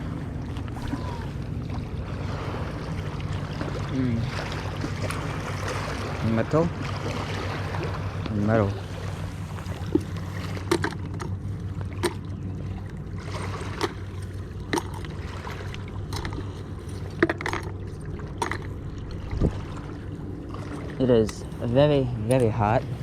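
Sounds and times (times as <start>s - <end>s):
steady low hum: 0.0s - 23.0s
washing water: 0.0s - 23.0s.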